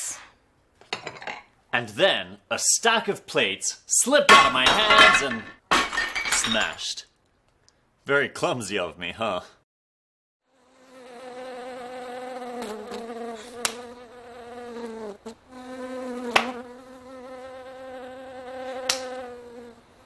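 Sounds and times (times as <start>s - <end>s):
insect buzzing: 10.5s - 20.0s
sharp slaps: 13.6s - 13.9s, 16.4s - 16.6s, 18.9s - 19.1s.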